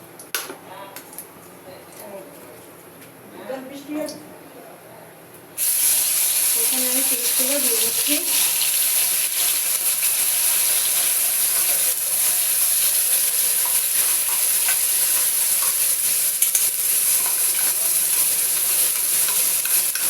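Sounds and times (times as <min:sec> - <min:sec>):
paste sizzling in oil: 0:05.6 - 0:20.0.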